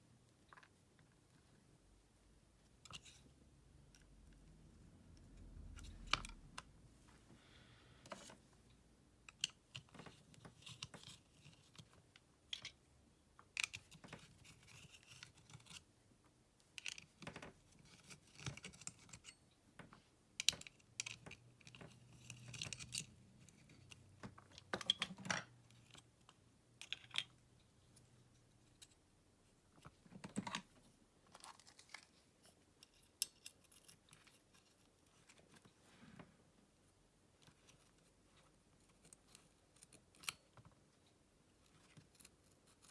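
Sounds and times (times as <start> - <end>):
small plastic and metal parts handled: 9.3 - 12.8, 13.5 - 15.9, 20.4 - 27.3, 29.8 - 35.8.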